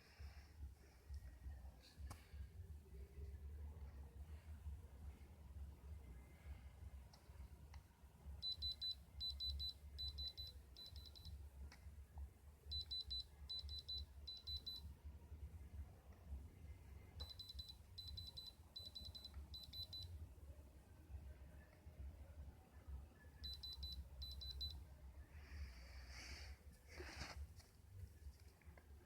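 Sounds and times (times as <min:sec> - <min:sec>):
faint low hum: 0:00.0 - 0:29.0.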